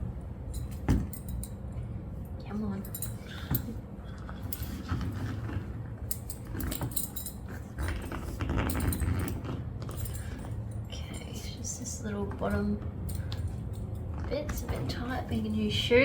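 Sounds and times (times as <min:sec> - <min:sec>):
metal buckle jingling: 0:00.5 - 0:03.8, 0:06.0 - 0:11.6, 0:12.4 - 0:15.7.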